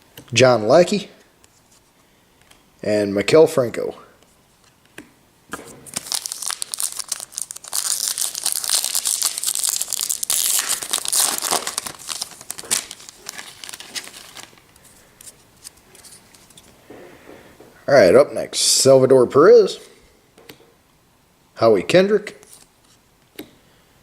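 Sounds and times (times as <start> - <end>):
foil wrapper tearing and crinkling: 5.9 - 14.6.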